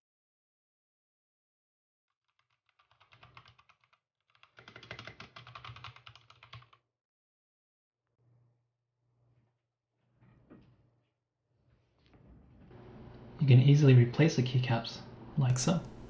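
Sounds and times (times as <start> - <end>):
mechanical keyboard typing: 2.2 - 6.8.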